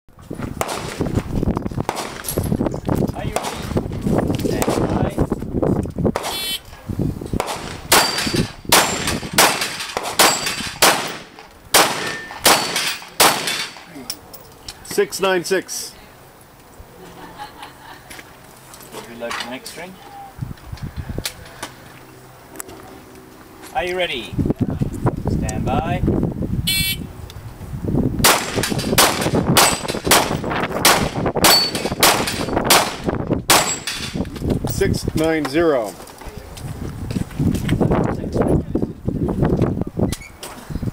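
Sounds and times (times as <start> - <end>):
pistol shots: 0.6 - 1.0, 1.9 - 2.3, 3.3 - 3.7, 6.2 - 6.5, 7.4 - 13.9, 28.2 - 34.1
bullets ringing steel plates: 7.9 - 11.2, 11.9 - 13.9, 31.4 - 32.6, 33.5 - 34.2.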